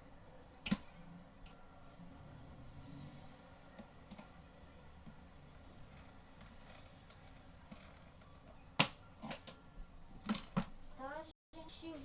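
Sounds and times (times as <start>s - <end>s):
plastic parts clicking and knocking: 10.2s - 10.7s.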